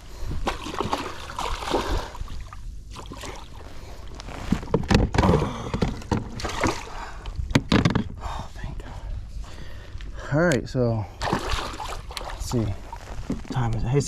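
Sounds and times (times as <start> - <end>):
water splashes: 0.4 - 3.7, 6.3 - 7.0, 11.2 - 12.9
knocks and rattles on a boat: 4.5 - 6.8, 7.4 - 8.2.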